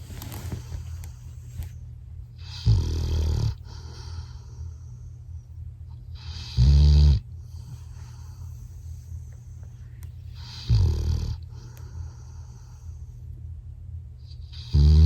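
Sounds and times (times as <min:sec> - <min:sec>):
dog snoring: 0:02.4 - 0:04.6, 0:06.1 - 0:08.8, 0:10.4 - 0:12.8, 0:14.3 - 0:15.0.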